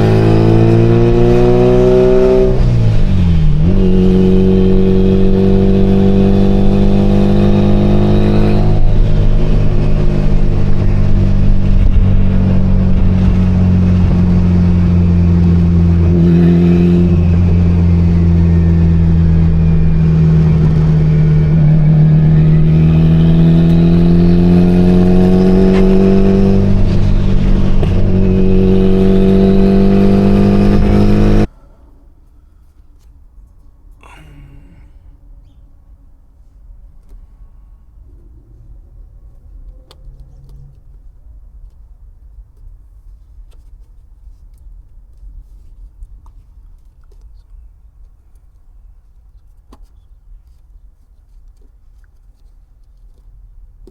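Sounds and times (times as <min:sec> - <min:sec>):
car engine running: 0:02.5 - 0:31.5.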